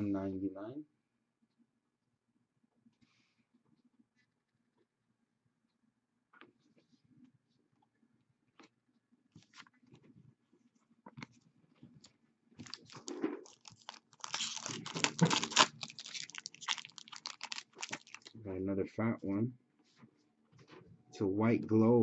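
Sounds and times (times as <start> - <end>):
cards and packaging clicking: 12.6 - 18.3
plastic wrapper crinkling: 12.6 - 18.4.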